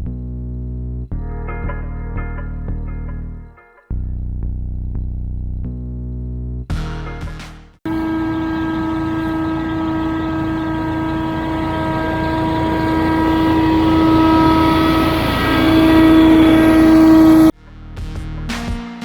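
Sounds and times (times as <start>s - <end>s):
lawn machine engine whining: 7.9s - 17.5s.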